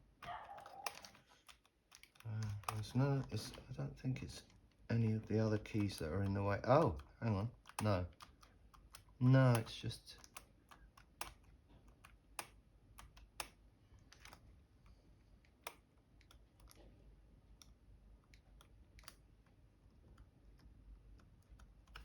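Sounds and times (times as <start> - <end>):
laptop key clicks: 0.0 - 3.7, 5.2 - 14.4, 17.6 - 19.3, 20.2 - 22.0.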